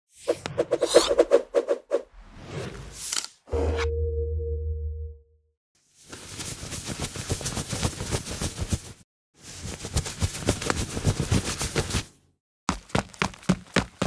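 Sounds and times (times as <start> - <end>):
fast running footsteps: 12.7 - 14.0.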